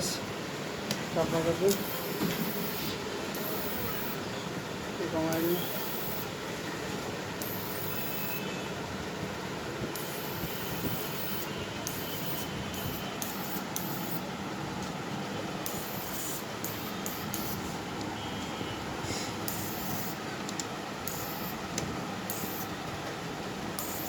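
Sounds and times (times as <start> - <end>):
inverter humming: 0.0 - 24.0
faint high whine: 10.0 - 14.3.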